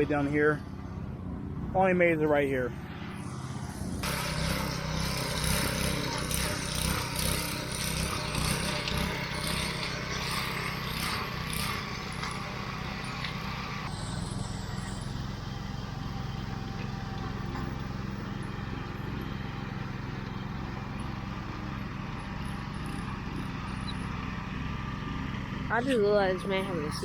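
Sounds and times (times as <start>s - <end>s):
vehicle engine rumbling: 0.0s - 27.0s.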